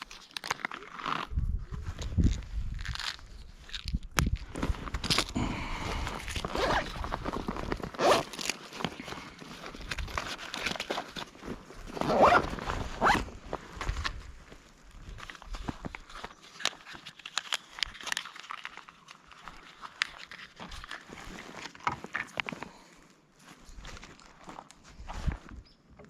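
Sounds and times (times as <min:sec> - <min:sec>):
rustling and scraping of gear: 0:00.0 - 0:25.8
short zip-like pulls: 0:05.0 - 0:11.1, 0:11.9 - 0:13.4.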